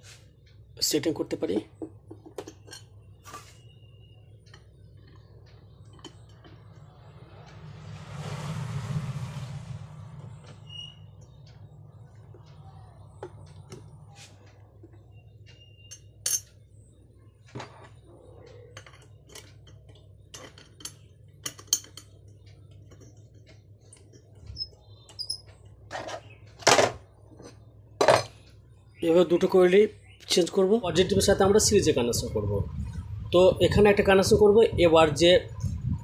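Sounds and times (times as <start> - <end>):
steady low hum: 0.0 - 36.0
small parts and tools clicking: 17.4 - 28.6.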